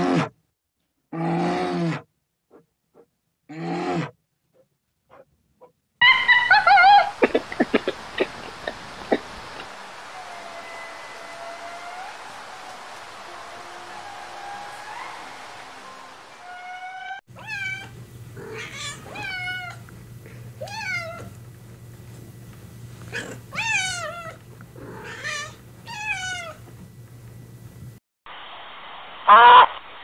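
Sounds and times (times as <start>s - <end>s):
cat meowing: 16.4s - 19.8s, 20.6s - 21.3s, 23.1s - 26.6s.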